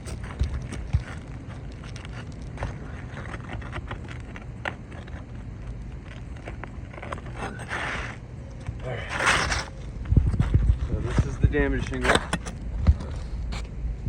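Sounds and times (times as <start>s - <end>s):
shingles clicking and scraping: 0.0s - 13.7s
steady low rumble: 0.0s - 14.0s.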